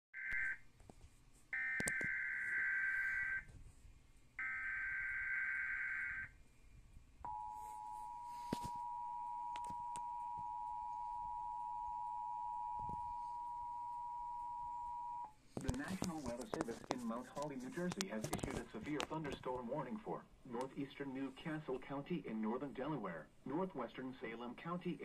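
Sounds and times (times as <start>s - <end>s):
steady two-tone attention signal: 7.3s - 15.3s.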